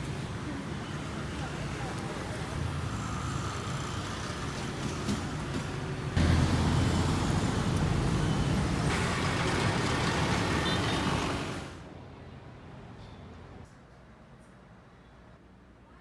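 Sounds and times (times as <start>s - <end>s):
road traffic: 0.0s - 13.6s.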